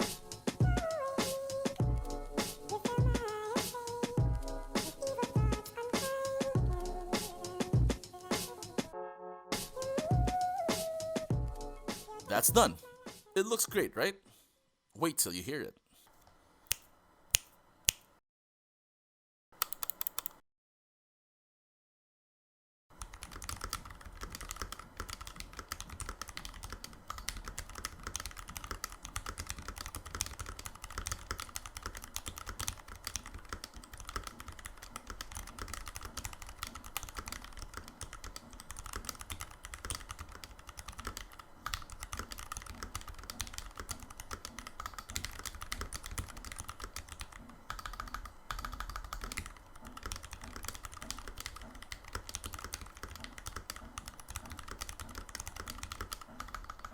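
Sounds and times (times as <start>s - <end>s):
mechanical keyboard typing: 19.6s - 20.4s, 23.0s - 56.9s.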